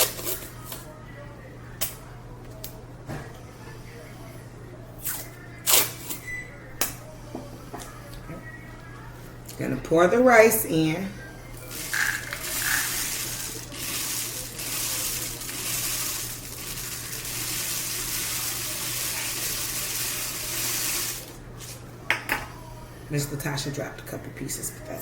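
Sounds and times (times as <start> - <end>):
rice pouring into a tube: 11.7 - 21.4.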